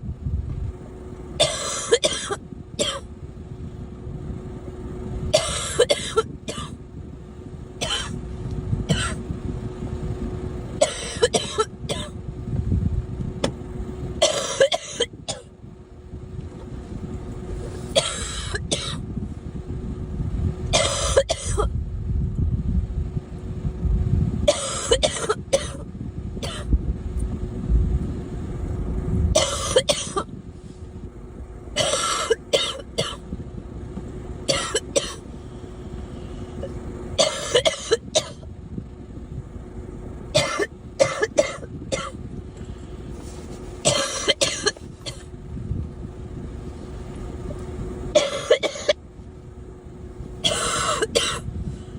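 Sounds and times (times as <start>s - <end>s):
girl coughing: 1.4s - 3.0s, 5.4s - 6.8s, 7.8s - 8.2s, 8.9s - 9.2s, 10.8s - 12.1s, 14.2s - 15.5s, 18.0s - 19.0s, 20.7s - 21.7s, 24.5s - 25.8s, 26.4s - 26.7s, 29.4s - 30.3s, 31.8s - 33.2s, 34.5s - 35.2s, 37.2s - 38.4s, 40.4s - 42.2s, 43.8s - 45.2s, 48.2s - 49.0s, 50.4s - 51.5s.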